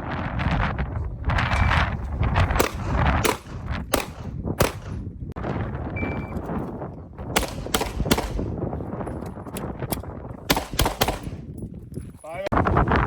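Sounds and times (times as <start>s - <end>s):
pistol shots: 2.6s - 5.0s, 7.4s - 8.5s, 10.5s - 11.4s.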